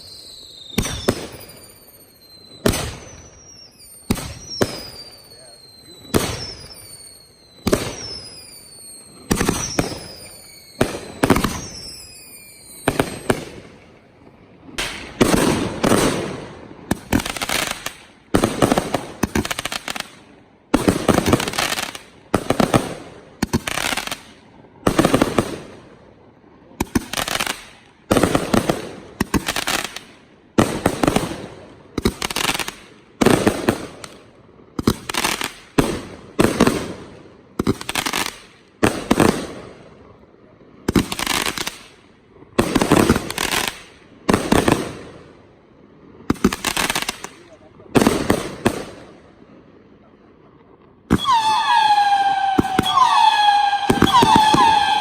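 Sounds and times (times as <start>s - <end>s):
whistles falling in pitch: 0.0s - 13.2s, 51.2s - 55.0s
fireworks bangs: 0.0s - 26.0s, 26.7s - 40.2s, 40.8s - 45.4s, 46.2s - 49.4s, 50.0s - 55.0s.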